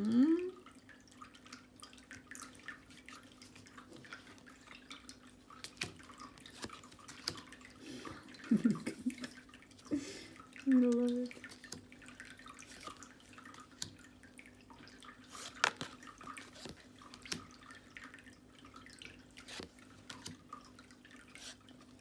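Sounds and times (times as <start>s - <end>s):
cards being flipped: 5.6s - 7.5s, 15.3s - 17.5s, 19.4s - 20.4s.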